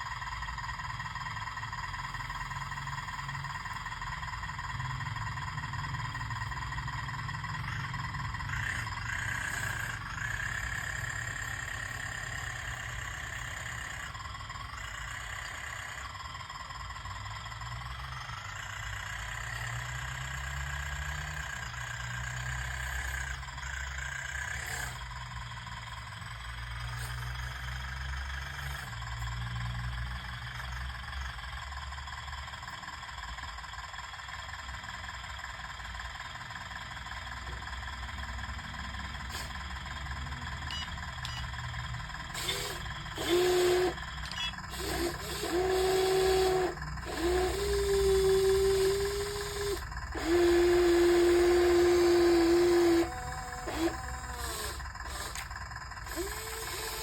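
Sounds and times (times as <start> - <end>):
electric motors whining: 0.0 - 31.6, 37.2 - 57.0.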